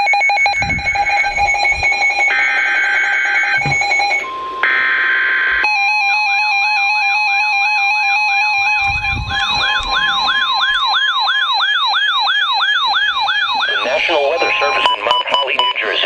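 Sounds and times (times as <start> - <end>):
siren-like warble: 0.0 - 15.5
shrill electronic alarm tones: 0.0 - 16.0.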